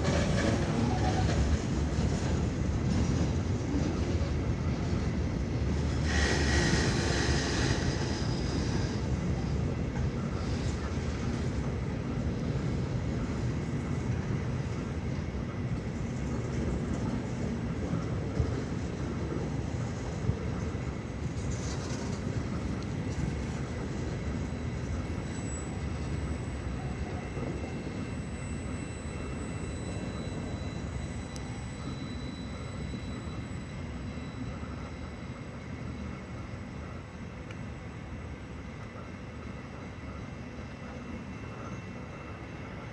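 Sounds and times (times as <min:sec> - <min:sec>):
train wheels rumbling: 0:00.0 - 0:42.9.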